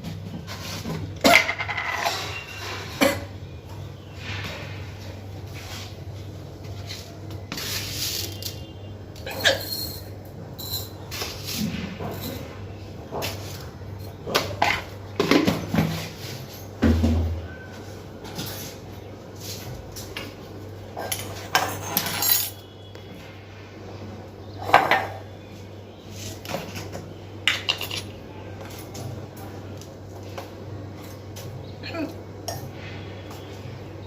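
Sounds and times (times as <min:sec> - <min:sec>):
dishes and utensils clattering: 0:00.0 - 0:05.0, 0:06.9 - 0:18.9, 0:20.9 - 0:22.8, 0:24.6 - 0:25.3, 0:26.5 - 0:29.2.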